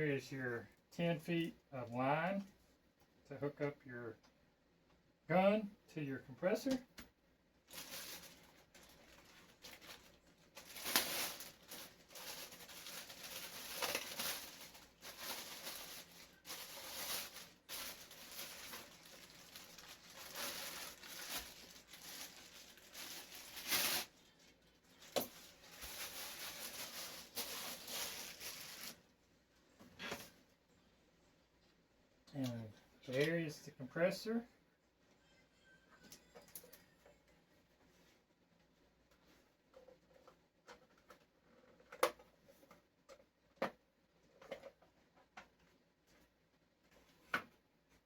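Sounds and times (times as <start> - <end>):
plastic wrap rustling and crinkling: 7.6 - 29.2.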